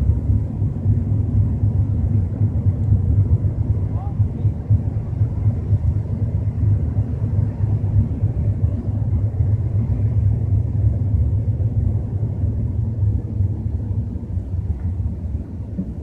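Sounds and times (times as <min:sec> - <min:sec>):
car low rumble while driving: 0:00.0 - 0:16.0.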